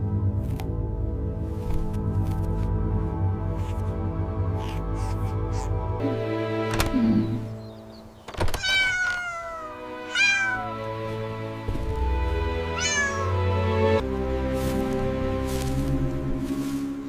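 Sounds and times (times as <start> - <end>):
background music: 0.0 - 17.0
cat meowing: 8.5 - 10.9, 12.8 - 13.4.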